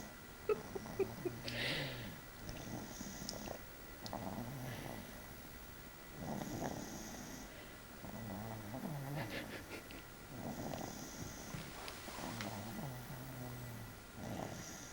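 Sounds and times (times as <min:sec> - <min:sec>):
boy snoring: 0:00.5 - 0:03.6, 0:06.2 - 0:09.4, 0:10.3 - 0:11.5, 0:12.2 - 0:14.9
breathy exhales: 0:01.4 - 0:02.2.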